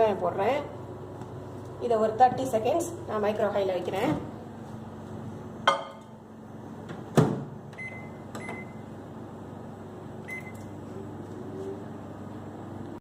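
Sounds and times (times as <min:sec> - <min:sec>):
keypad beeps: 0:07.8 - 0:08.8, 0:10.3 - 0:10.7.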